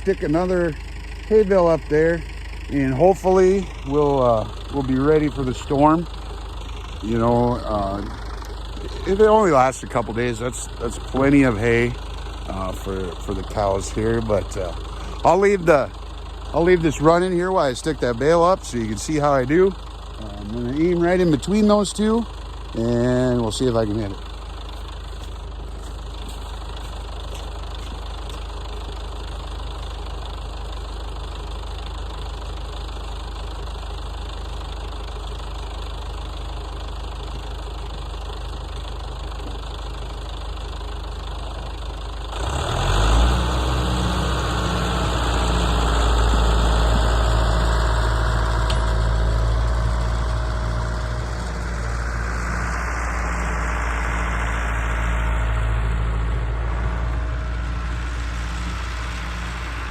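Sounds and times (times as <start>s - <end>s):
tractor diesel engine: 0.0s - 59.9s.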